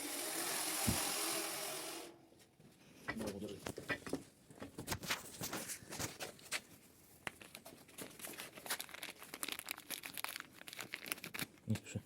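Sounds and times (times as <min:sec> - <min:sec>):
packaging clicks and rustling: 0:07.3 - 0:11.7.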